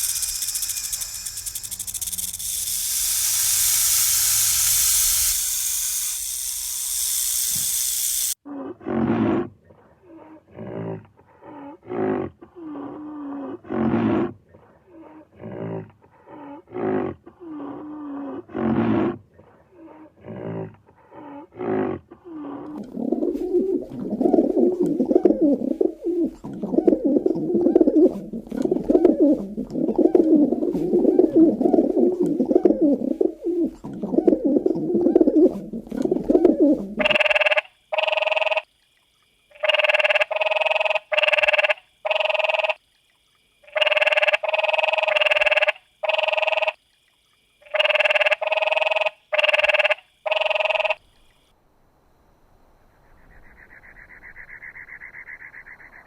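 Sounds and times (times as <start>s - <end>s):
low warbling cooing: 22.4s - 37.1s.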